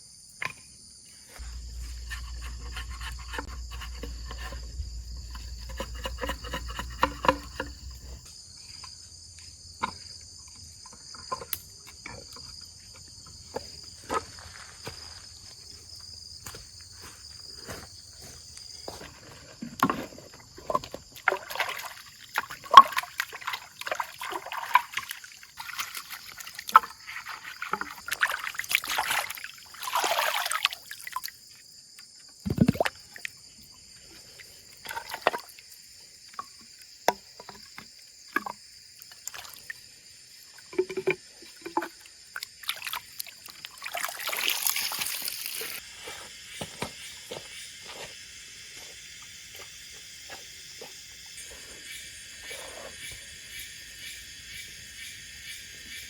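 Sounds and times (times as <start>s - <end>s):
insect chorus: 0.0s - 56.0s
water splashing and rustling: 18.9s - 31.7s, 32.4s - 45.8s.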